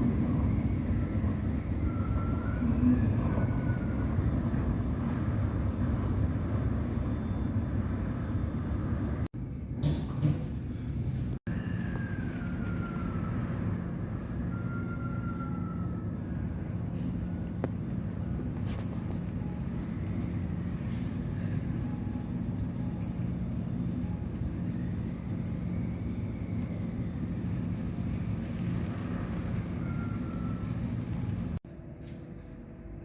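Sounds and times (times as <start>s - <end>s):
low engine hum: 10.7s - 33.0s.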